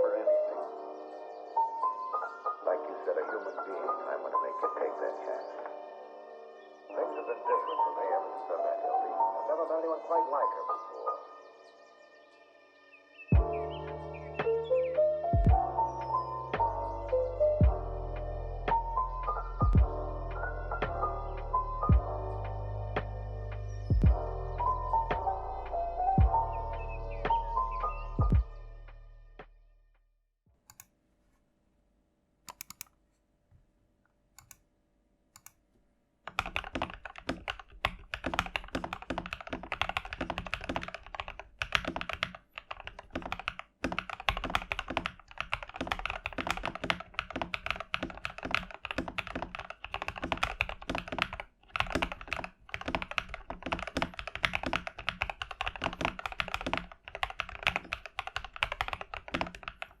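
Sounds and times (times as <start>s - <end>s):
mechanical keyboard typing: 30.7s - 30.9s, 32.5s - 32.9s, 34.4s - 34.6s, 35.4s - 35.6s, 36.3s - 60.0s.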